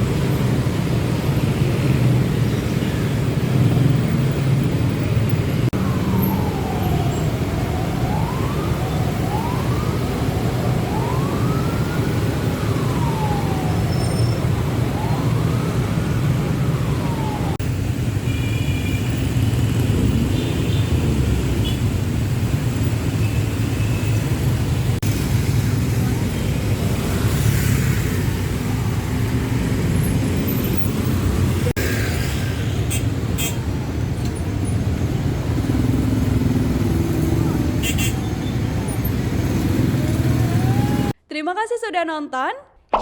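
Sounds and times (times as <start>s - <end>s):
vehicle siren wailing: 5.5s - 17.7s, 22.8s - 31.7s, 33.4s - 41.2s
idling traffic rumble: 19.0s - 41.2s.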